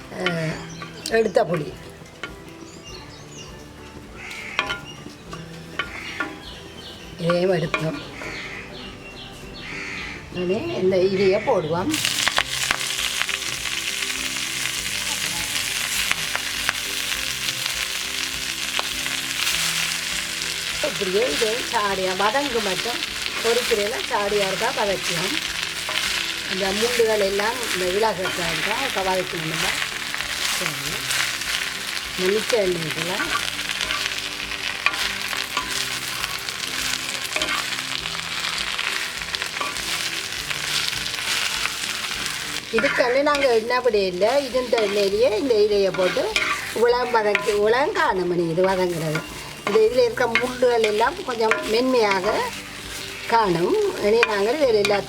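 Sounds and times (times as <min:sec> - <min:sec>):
leaves sizzling in oil: 0:00.0 - 0:55.0
stirring clicks: 0:15.6 - 0:55.0.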